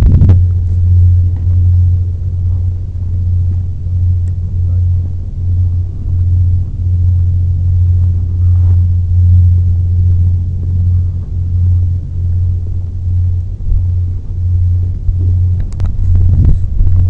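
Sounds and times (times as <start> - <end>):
deep hum: 0.0 - 17.0
higher hum: 0.0 - 17.0.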